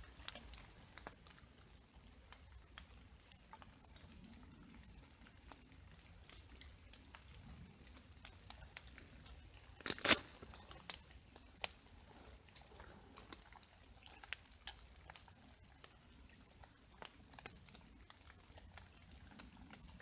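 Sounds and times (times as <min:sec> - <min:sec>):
raindrops ticking through trees: 0:00.0 - 0:20.0
loud crinkling rustle: 0:08.4 - 0:14.3.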